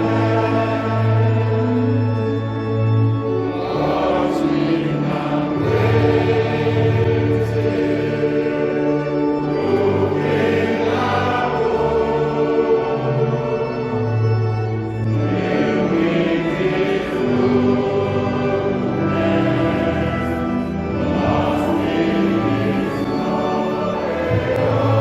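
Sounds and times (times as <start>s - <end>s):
choir singing a hymn: 0.0s - 25.0s.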